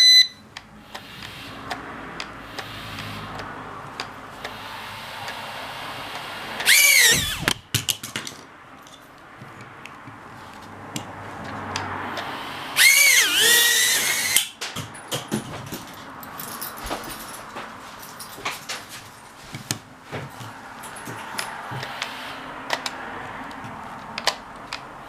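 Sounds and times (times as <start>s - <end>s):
drone motors whining: 4.4s - 7.6s, 12.2s - 14.4s.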